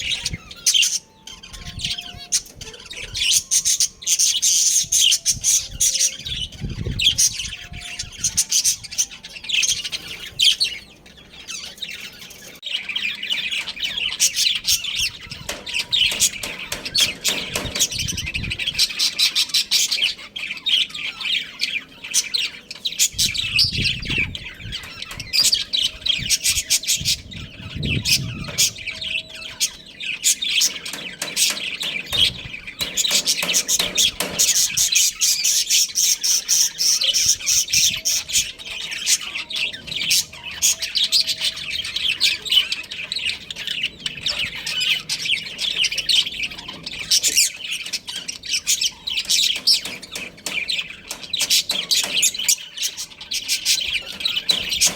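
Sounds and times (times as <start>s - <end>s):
budgerigars chirping and chattering: 0.0s - 54.9s.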